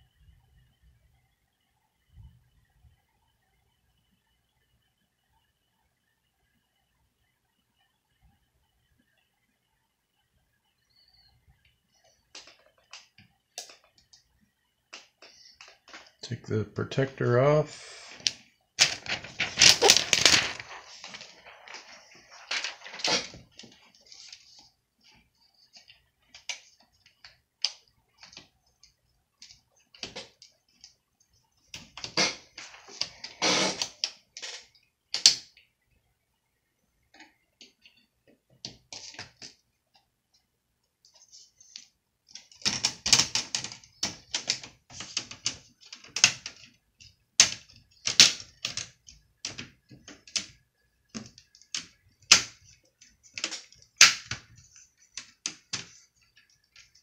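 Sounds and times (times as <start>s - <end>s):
plastic laptop parts clicking: 42.3s - 57.0s.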